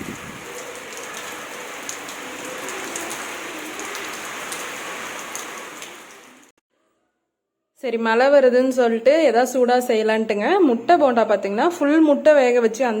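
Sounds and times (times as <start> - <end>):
steady rain: 0.0 - 6.5.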